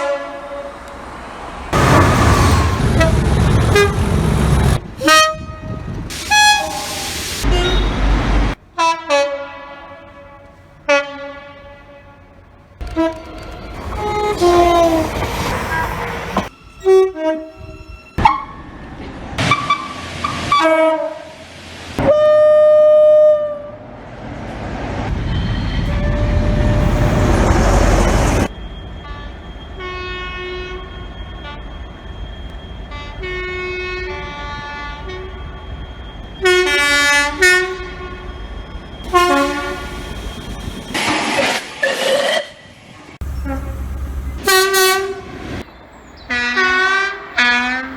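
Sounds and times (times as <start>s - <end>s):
train running past: 0.0s - 8.6s, 12.4s - 20.4s, 21.3s - 41.9s
rail running noise: 0.0s - 47.9s
train horn blasts: 1.8s - 8.1s, 8.8s - 13.3s, 25.5s - 28.4s, 32.9s - 35.4s, 36.4s - 38.3s, 39.1s - 40.3s, 43.3s - 45.6s, 46.3s - 47.9s.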